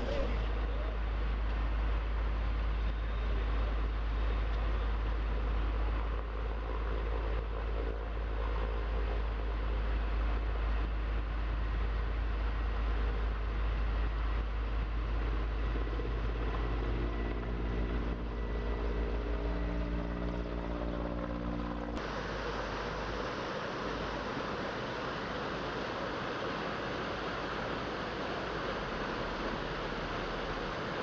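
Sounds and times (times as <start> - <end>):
steady rushing noise: 0.0 - 0.5, 21.4 - 31.0
heavy engine rumbling: 0.0 - 0.6.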